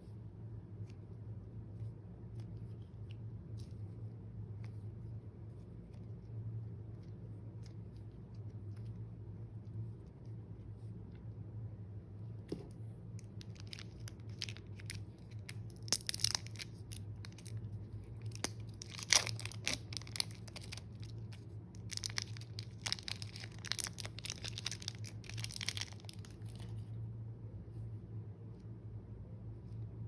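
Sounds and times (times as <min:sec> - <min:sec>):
steady low hum: 0:00.0 - 0:30.0
slime squished by hand: 0:13.2 - 0:26.7.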